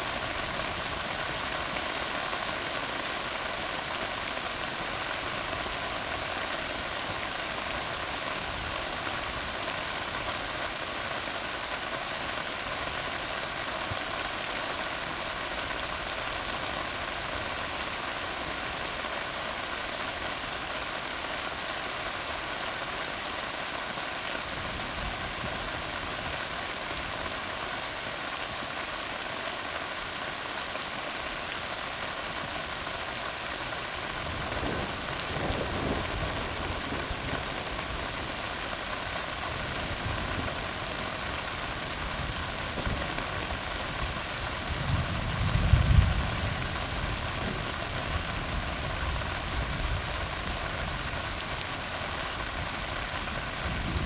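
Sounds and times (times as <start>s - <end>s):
rain falling on a road: 0.0s - 54.0s.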